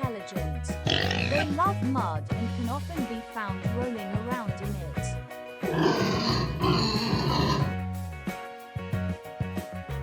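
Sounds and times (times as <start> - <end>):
background music: 0.0 - 10.0
pig calls: 0.8 - 1.6, 5.6 - 7.8.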